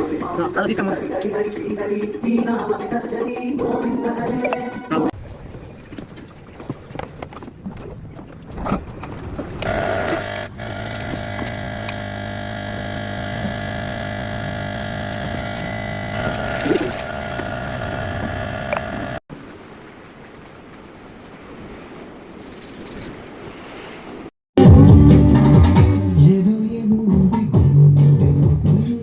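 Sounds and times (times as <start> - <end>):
steady multi-tone hum: 9.6 - 19.2.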